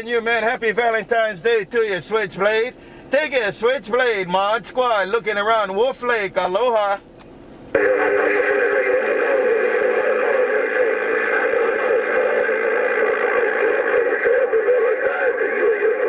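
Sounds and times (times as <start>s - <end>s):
radio voice buried in static: 7.8s - 16.0s.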